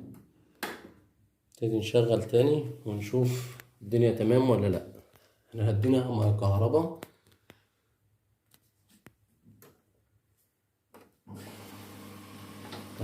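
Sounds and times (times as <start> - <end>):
washing machine humming: 11.3 - 13.0.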